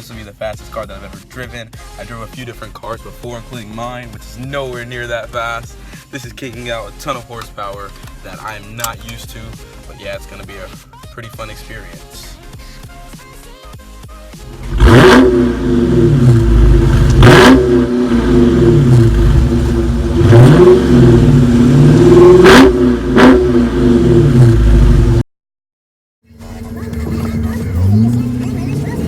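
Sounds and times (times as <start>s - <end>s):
exhaust cracks: 6.8s - 9.5s, 14.6s - 25.2s, 26.4s - 29.0s
car engine revving hard: 14.5s - 25.2s, 26.4s - 29.0s.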